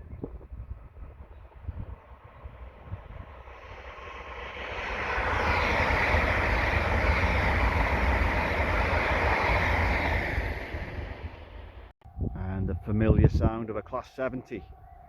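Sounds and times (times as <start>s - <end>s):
diesel locomotive engine rumble: 0.0s - 11.9s.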